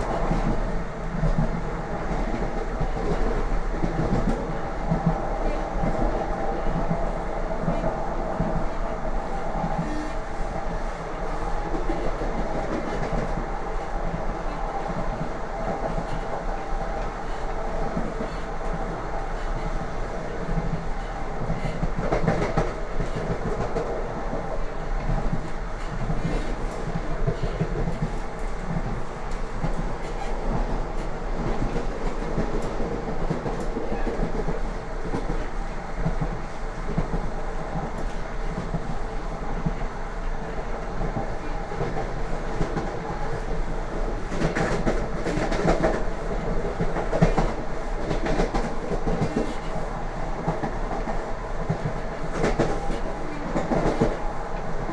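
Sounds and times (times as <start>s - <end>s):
train wheels clattering on rails: 14.8s - 39.8s, 40.9s - 54.9s.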